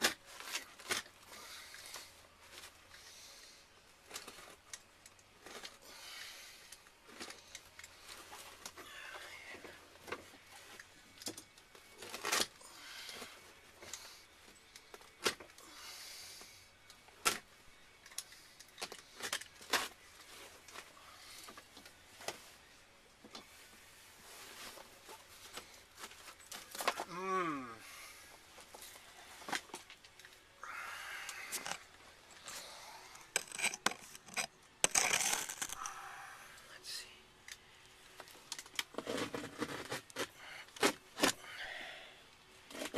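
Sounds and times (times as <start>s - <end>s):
hand tools clinking and scraping: 31.2s - 35.9s.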